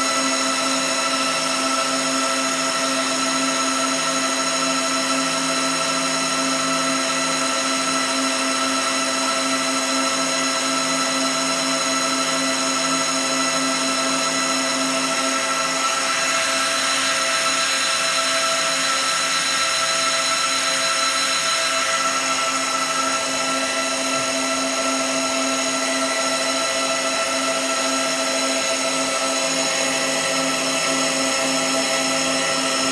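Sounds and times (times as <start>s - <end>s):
steady whining tones: 13.9s - 32.9s.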